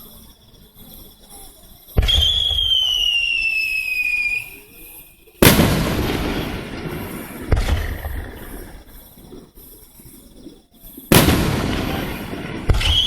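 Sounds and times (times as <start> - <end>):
firework launch thump: 2.0 - 2.7, 5.4 - 8.8, 11.1 - 13.0
firework bursting bang: 2.0 - 3.1, 5.4 - 8.9, 11.1 - 13.0
falling firework whistle: 2.0 - 8.8, 11.1 - 13.0.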